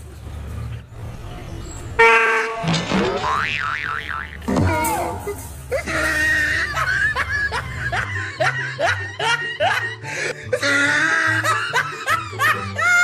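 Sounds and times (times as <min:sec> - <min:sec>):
person laughing: 0:05.1 - 0:13.0.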